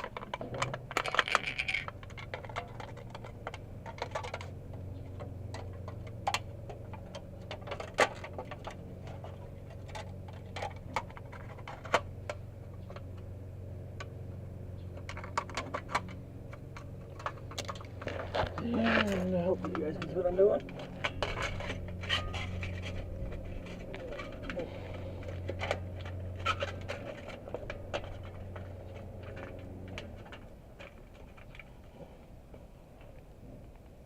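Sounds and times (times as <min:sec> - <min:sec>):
aluminium can crinkling: 0:00.0 - 0:04.6
steady low hum: 0:00.0 - 0:34.0.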